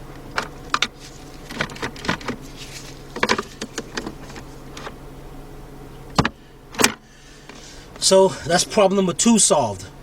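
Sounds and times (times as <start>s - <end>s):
low hum: 0.0s - 10.0s
gear shifter plastic clicks: 0.2s - 5.0s.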